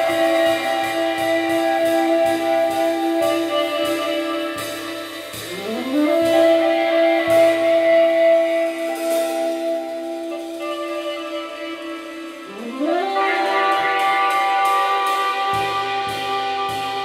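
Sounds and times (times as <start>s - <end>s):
cymbal washes: 0.0s - 17.0s
saxophone with electronic effects: 0.0s - 17.0s.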